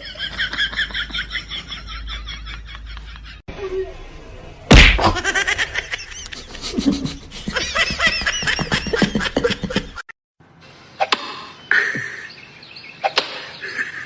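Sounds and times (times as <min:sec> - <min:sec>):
loud knock: 0:04.7 - 0:05.4.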